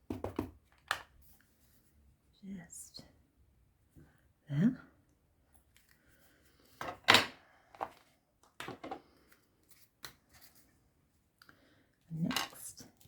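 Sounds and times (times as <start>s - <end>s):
tools knocking on desk: 0.0s - 0.6s.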